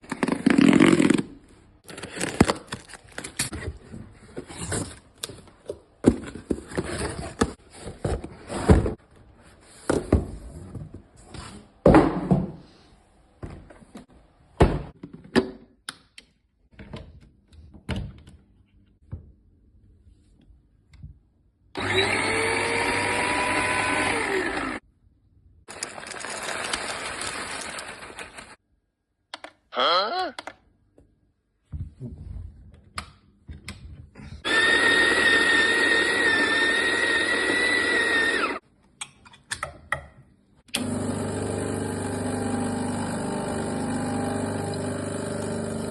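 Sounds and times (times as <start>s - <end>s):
coffee grinder motor running: 21.8s - 24.8s, 25.7s - 28.2s, 34.4s - 38.6s, 40.7s - 45.9s.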